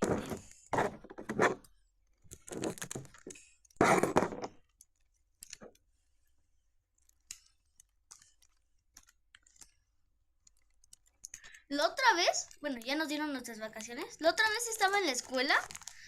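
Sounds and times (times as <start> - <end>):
tape and paper rustling: 0.1 - 3.4, 11.8 - 16.0
small crinkles and clicks: 1.6 - 3.8, 4.5 - 16.0.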